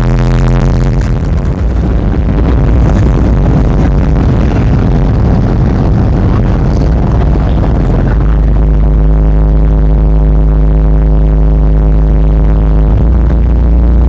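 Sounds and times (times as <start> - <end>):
distorted hard dance music: 0.0 - 14.0.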